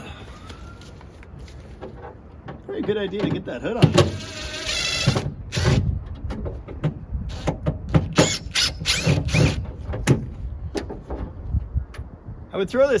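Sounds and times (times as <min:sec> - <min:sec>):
power tool whir: 0:04.1 - 0:05.8, 0:08.1 - 0:09.8.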